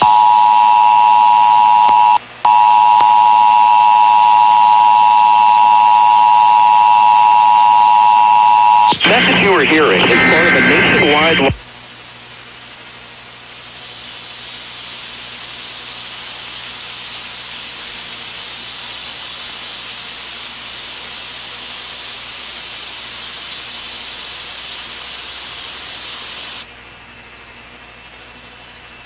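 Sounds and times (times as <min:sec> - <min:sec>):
faint low hum: 0:00.0 - 0:11.6
broadcast static hiss: 0:00.0 - 0:29.0.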